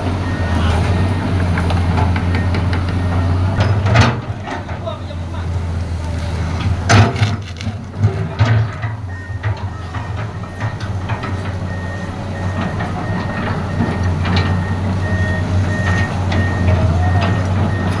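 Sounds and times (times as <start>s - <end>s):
diesel engine running: 0.0s - 18.0s
travel alarm beeping: 9.1s - 18.0s.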